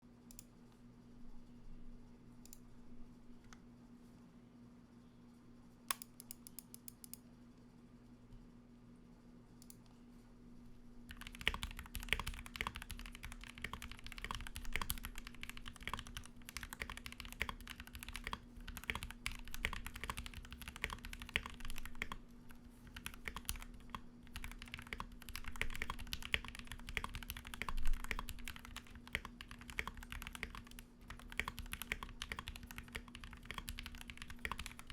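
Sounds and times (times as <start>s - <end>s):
faint steady hum: 0.0s - 34.9s
mechanical keyboard typing: 11.1s - 34.9s.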